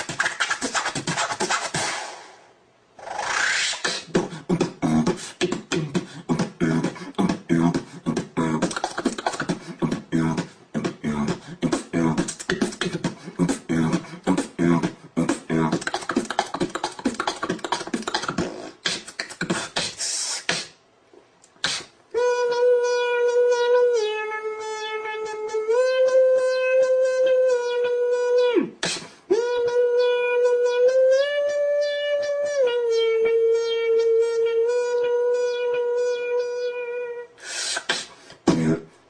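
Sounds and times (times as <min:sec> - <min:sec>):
beatboxing drum hits: 0:00.0 - 0:02.4, 0:03.0 - 0:20.8, 0:21.6 - 0:21.9, 0:28.8 - 0:29.6, 0:37.7 - 0:38.9
long mouth hiss: 0:03.0 - 0:07.1, 0:15.2 - 0:20.8, 0:21.6 - 0:23.1, 0:37.4 - 0:38.7.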